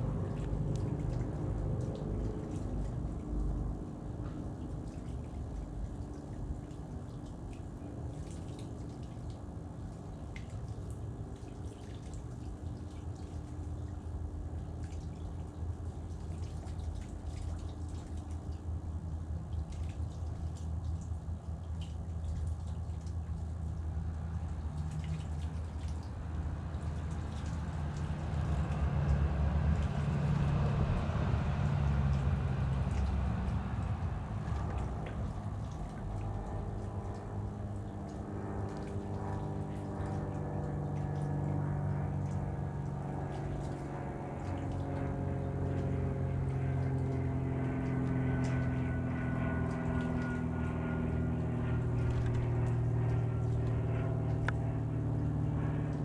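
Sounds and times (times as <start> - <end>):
motor engine humming: 23.4 - 56.0.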